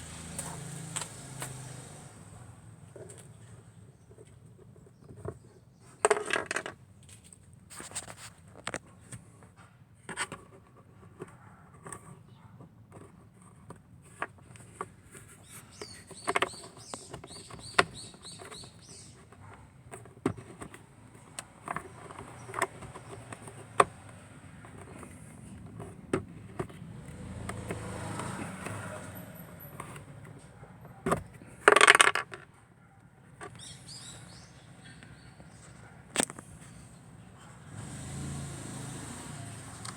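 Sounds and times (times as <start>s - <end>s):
plastic parts clicking and knocking: 2.9s - 12.2s, 12.9s - 32.5s
scraping rustle: 3.0s - 12.2s.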